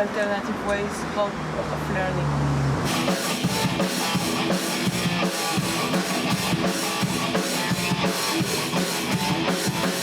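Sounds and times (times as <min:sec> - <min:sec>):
drum kit beat: 0:02.8 - 0:10.0
guitar playing: 0:02.8 - 0:10.0.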